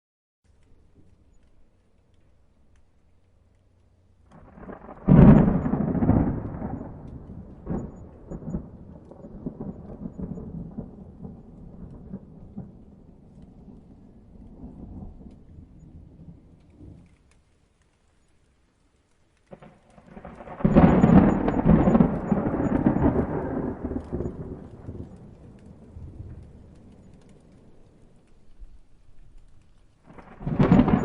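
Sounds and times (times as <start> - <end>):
thunder rumble and crack: 4.3 - 17.4, 19.4 - 31.0.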